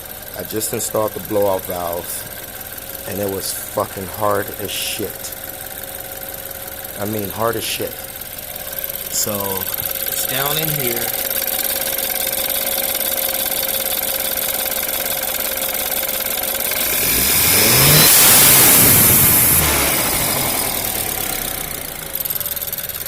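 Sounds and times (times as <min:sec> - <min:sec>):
car engine idling and revving: 0:00.0 - 0:23.0
blow-off valve hissing: 0:16.7 - 0:20.9.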